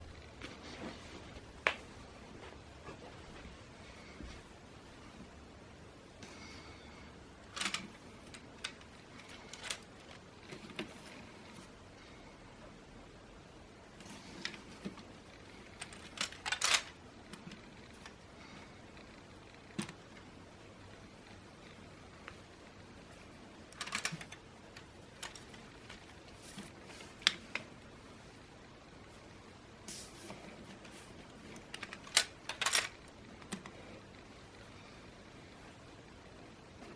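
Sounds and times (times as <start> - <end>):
faint steady hiss: 0.0 - 36.9
plastic parts clicking: 7.4 - 11.1, 14.4 - 18.2, 23.7 - 27.7, 31.5 - 33.8.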